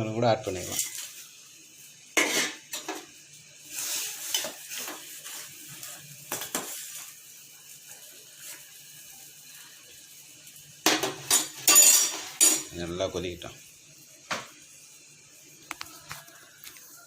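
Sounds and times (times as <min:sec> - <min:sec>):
liquid boiling: 0:00.0 - 0:17.0
stirring and scraping in pot: 0:00.6 - 0:01.3, 0:02.2 - 0:07.2.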